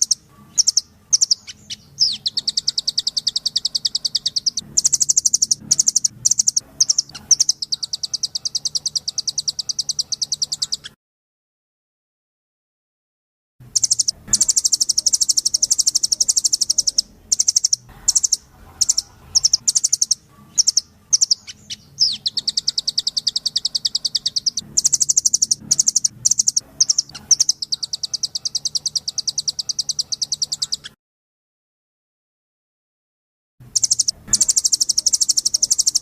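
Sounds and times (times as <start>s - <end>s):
songbird trills: 0.0s - 11.0s, 13.7s - 31.0s, 33.7s - 36.0s.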